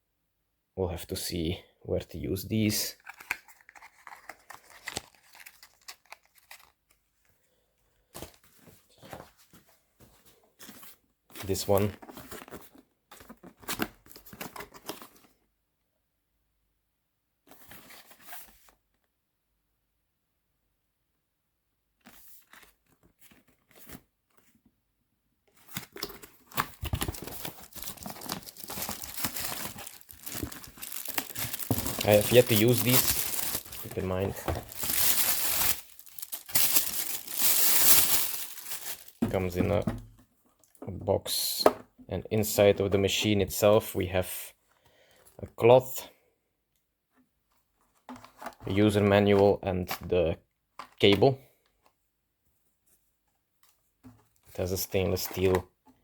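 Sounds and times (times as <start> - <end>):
plastic packaging crinkling: 3.0 - 6.8, 25.7 - 39.8.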